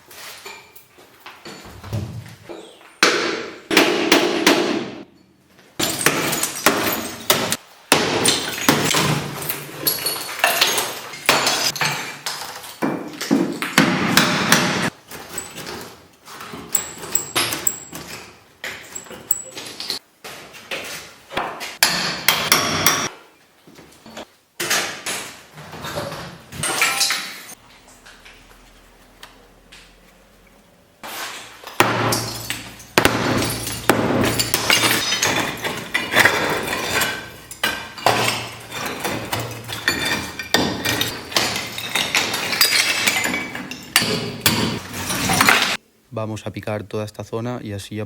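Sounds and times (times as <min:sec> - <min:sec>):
hammering on brick and plaster: 0:03.0 - 0:05.0, 0:05.8 - 0:09.3, 0:21.4 - 0:23.1, 0:31.8 - 0:43.1.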